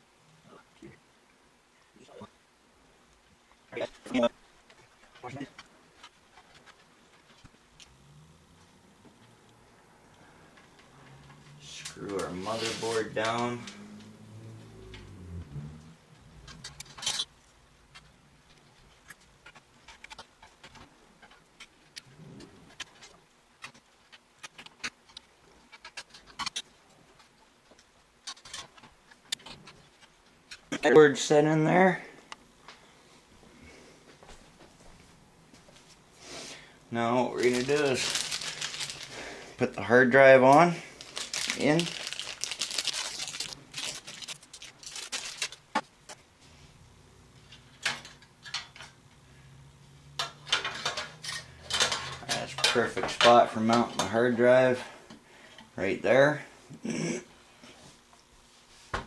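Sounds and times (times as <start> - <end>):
rustling: 10.2 - 30.8, 32.7 - 39.6, 40.8 - 46.7.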